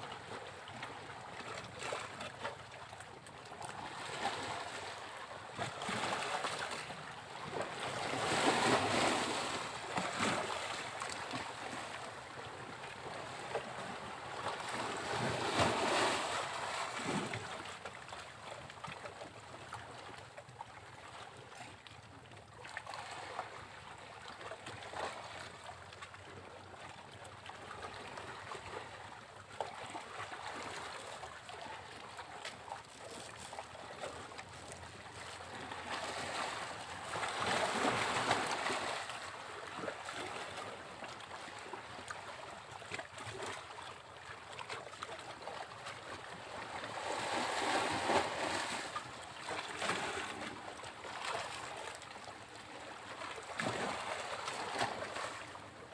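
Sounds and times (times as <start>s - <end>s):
surf washing: 46.7s - 49.0s.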